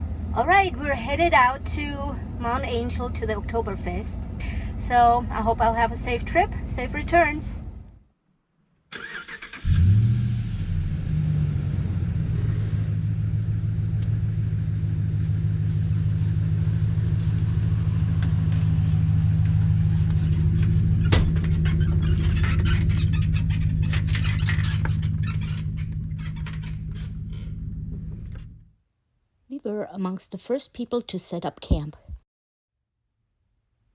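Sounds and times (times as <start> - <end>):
vehicle engine running: 0.0 - 8.0, 9.6 - 28.7.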